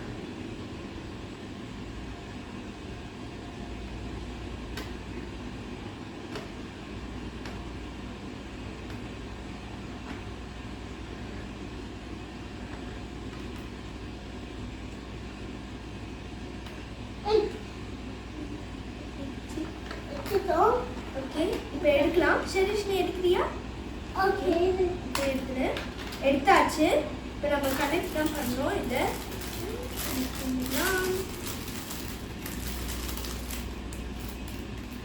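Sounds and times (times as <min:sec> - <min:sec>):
room machinery humming: 0:00.0 - 0:35.0
faint clicks and taps: 0:19.5 - 0:21.8, 0:24.4 - 0:26.7.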